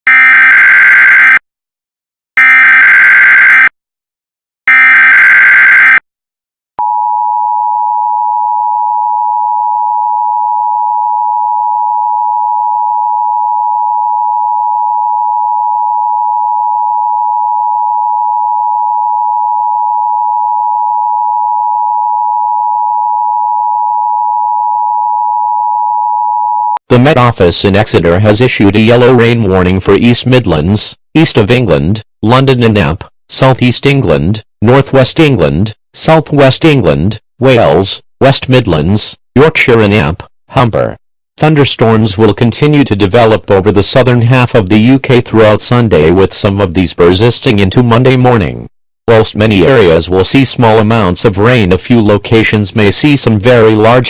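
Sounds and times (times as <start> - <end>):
harsh dual tone alert signal: 0.1 - 1.4, 2.4 - 3.7, 4.7 - 6.0.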